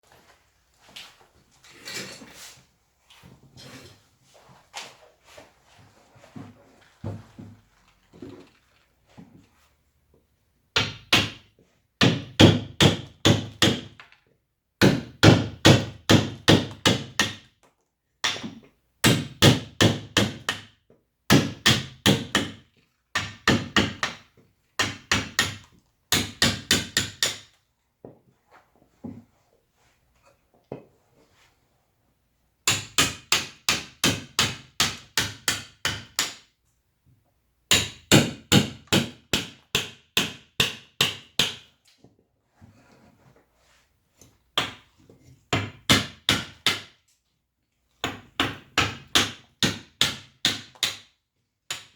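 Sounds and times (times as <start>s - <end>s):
mallet striking chisel into wood: 10.8s - 11.4s, 12.0s - 14.0s, 14.8s - 17.5s, 18.2s - 20.7s, 21.3s - 22.6s, 23.2s - 24.2s, 24.8s - 27.5s, 32.7s - 36.4s, 37.7s - 41.7s, 45.5s - 46.9s, 48.0s - 51.0s.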